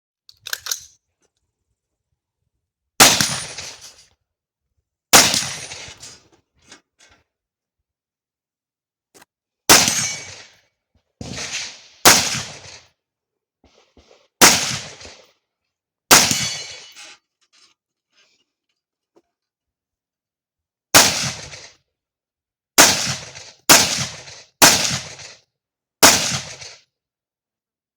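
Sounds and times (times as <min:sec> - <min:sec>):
rifle shots with echo: 0:03.0 - 0:03.8, 0:05.1 - 0:06.0, 0:09.7 - 0:10.5, 0:11.2 - 0:12.8, 0:14.4 - 0:15.2, 0:16.1 - 0:16.8, 0:21.0 - 0:21.7, 0:22.8 - 0:25.3, 0:26.0 - 0:26.8.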